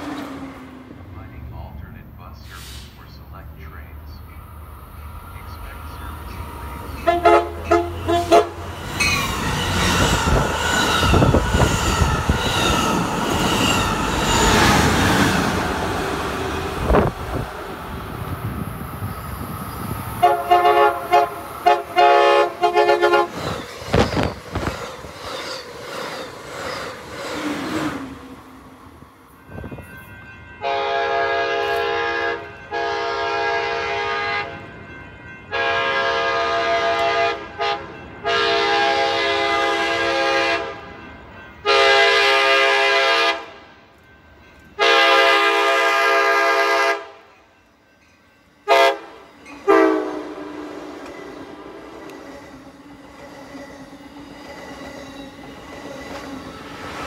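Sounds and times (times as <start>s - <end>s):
passing train clatter: 0.0s - 57.0s
train horn long blasts: 7.0s - 8.7s, 20.2s - 23.4s, 30.6s - 34.6s, 35.5s - 40.9s, 41.6s - 43.7s, 44.8s - 47.3s, 48.6s - 52.0s
train horn short blasts: 7.0s - 8.7s, 20.2s - 23.4s, 30.6s - 34.6s, 35.5s - 40.8s, 41.6s - 43.6s, 44.8s - 47.2s, 48.6s - 51.7s.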